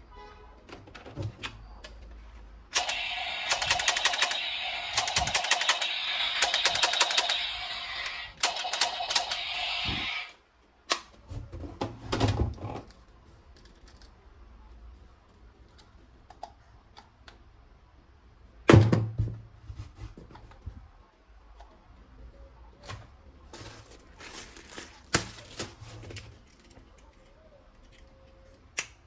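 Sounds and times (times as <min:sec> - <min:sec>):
toy gun rapid-fire clicking: 0:02.7 - 0:10.3.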